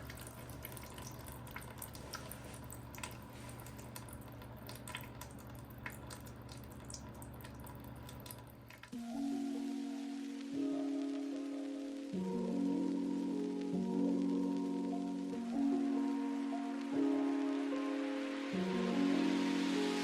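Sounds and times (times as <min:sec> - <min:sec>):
oil dripping into bucket: 0:00.0 - 0:08.9.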